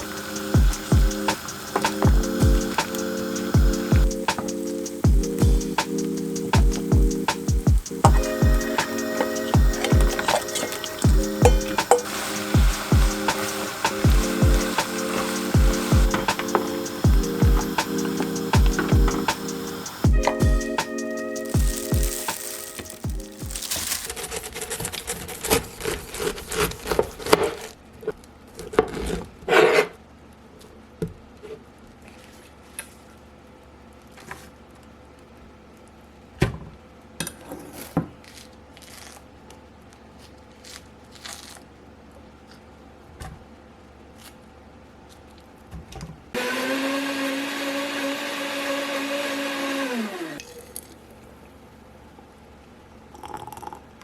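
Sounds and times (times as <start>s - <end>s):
electric blender running: 46.4s - 50.4s.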